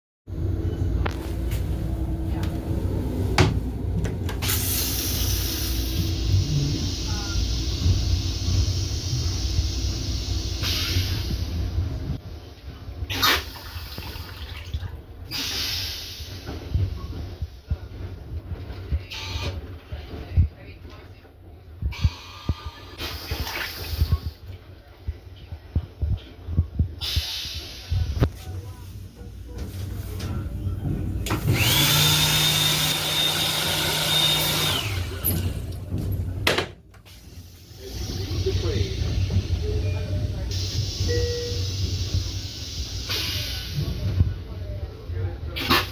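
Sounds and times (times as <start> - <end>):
low rumble of moving train: 0.3 - 32.6, 34.1 - 45.9
toilet flushing: 2.3 - 11.7, 13.0 - 16.7, 30.9 - 39.8
toilet flush motor whine: 31.2 - 36.0.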